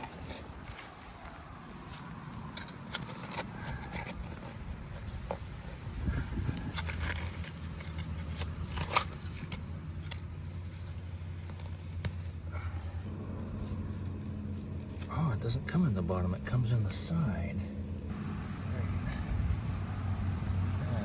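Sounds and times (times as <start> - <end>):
digging in sandy soil: 0.0 - 21.0.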